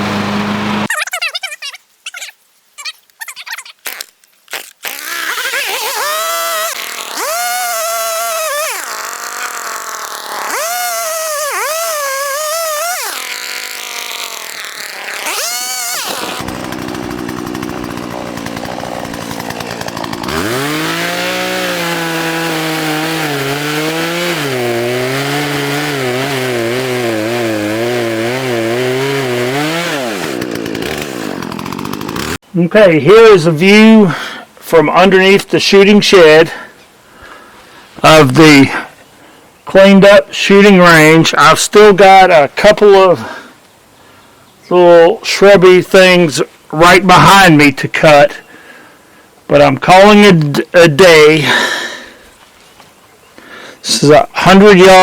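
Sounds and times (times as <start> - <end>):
small two-stroke engine revving: 0.0 - 0.9, 4.9 - 32.4.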